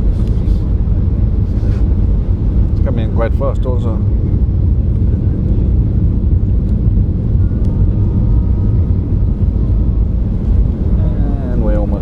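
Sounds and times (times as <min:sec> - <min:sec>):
engine and airflow rumble: 0:00.0 - 0:12.0
faint high whine: 0:07.1 - 0:12.0.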